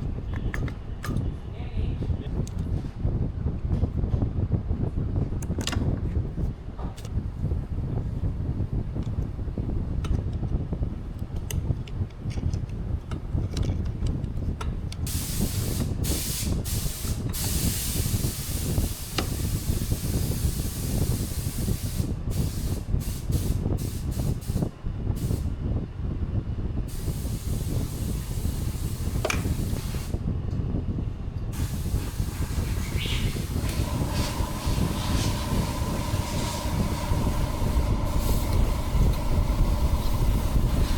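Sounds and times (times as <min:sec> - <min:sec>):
steady low rumble: 0:00.0 - 0:40.9
spray hissing in bursts: 0:15.1 - 0:25.4, 0:26.9 - 0:30.2, 0:31.5 - 0:40.9.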